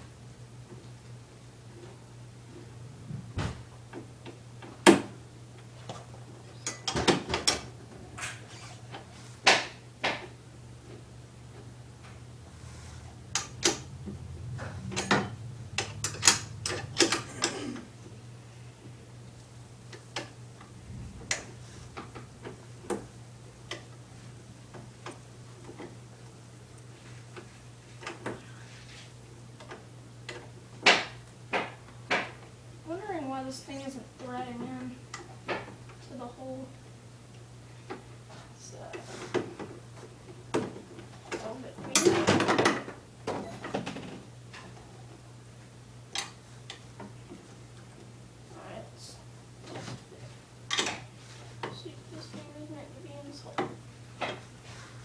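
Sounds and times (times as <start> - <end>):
faint steady hum: 0.0 - 55.0
low hum: 12.0 - 19.0, 20.5 - 23.6
knocks and clicks of metal parts: 14.6 - 17.7.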